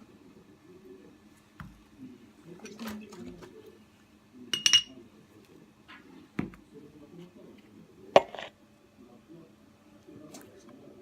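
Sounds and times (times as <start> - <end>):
utensil ringing clink: 4.6 - 4.9.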